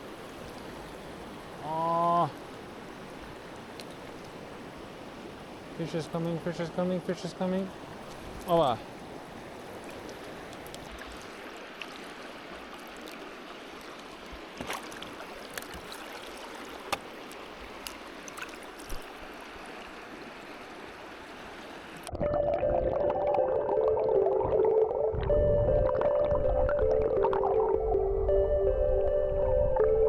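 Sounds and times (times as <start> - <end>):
river water rushing: 0.0 - 22.1
music: 22.2 - 30.0.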